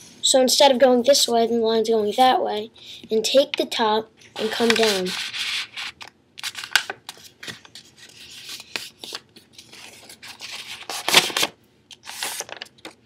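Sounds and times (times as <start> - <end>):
paper being folded and creased: 4.4 - 13.0.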